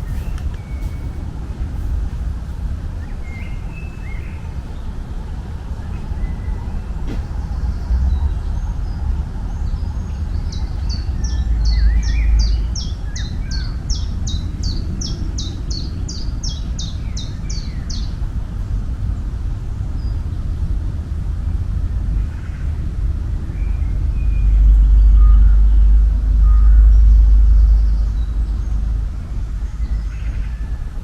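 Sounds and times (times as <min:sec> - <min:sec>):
low chirps: 0:00.0 - 0:19.2, 0:19.9 - 0:31.0
songbird singing: 0:00.0 - 0:31.0
steady low rumble: 0:00.0 - 0:31.0.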